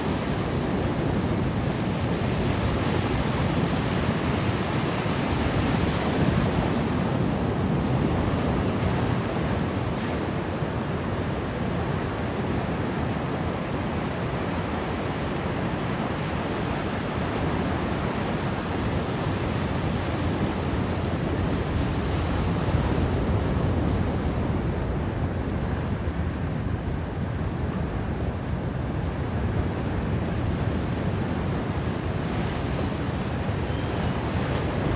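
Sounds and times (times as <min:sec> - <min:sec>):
ocean surf washing on beach: 0:00.0 - 0:34.9
wind buffeting microphone: 0:00.0 - 0:34.9.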